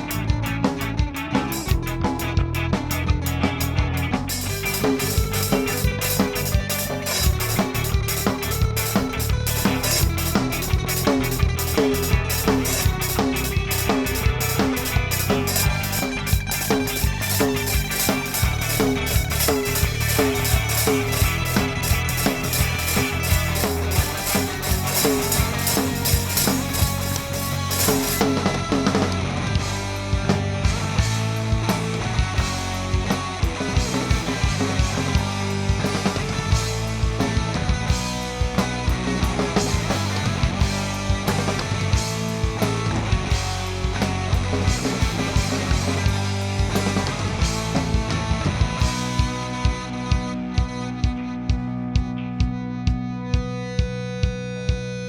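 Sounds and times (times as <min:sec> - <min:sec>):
bass guitar: 0:00.0 - 0:55.0
drum kit beat: 0:01.5 - 0:02.0, 0:03.2 - 0:28.8.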